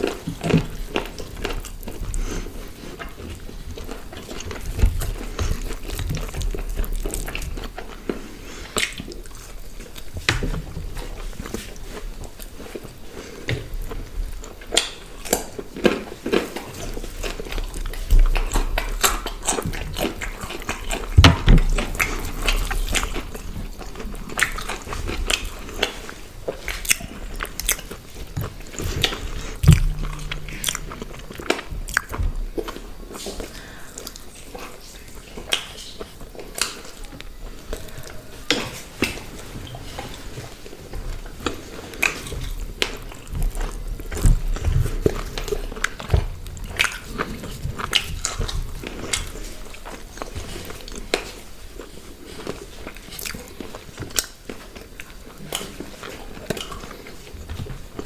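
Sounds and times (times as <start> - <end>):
person chewing and crunching food: 0.0 - 58.0
wet mouth sounds: 26.6 - 32.8.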